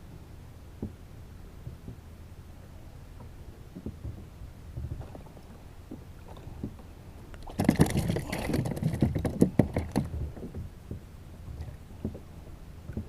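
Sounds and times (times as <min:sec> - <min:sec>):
steady low rumble: 0:00.0 - 0:07.5
knocks and rattles on a kayak: 0:03.2 - 0:13.0.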